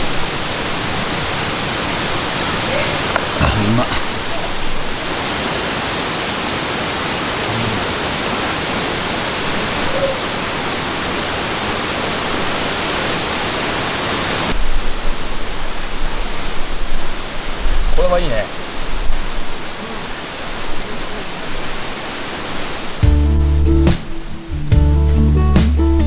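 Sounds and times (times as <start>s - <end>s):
stream rushing: 0.0s - 17.8s
high insect drone: 0.0s - 23.3s.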